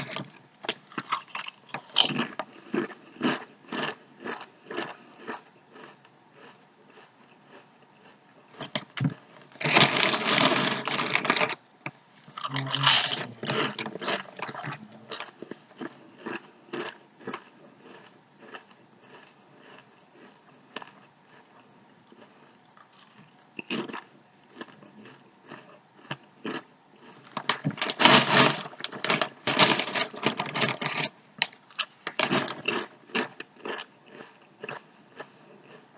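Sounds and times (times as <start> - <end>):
chips crunching while chewed: 0.0 - 11.6, 12.3 - 35.9.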